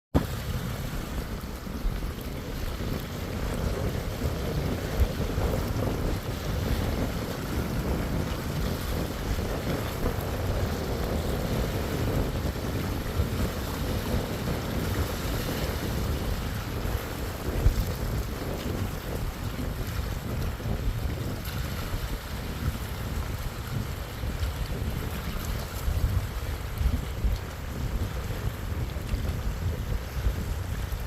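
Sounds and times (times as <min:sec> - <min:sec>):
sea waves washing on shore: 0:00.2 - 0:31.0
wind buffeting microphone: 0:00.2 - 0:31.0.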